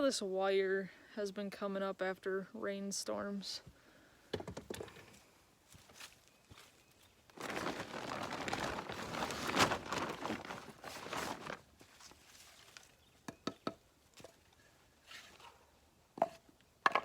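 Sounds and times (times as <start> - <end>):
scrap debris rustling and scraping: 7.4 - 12.9.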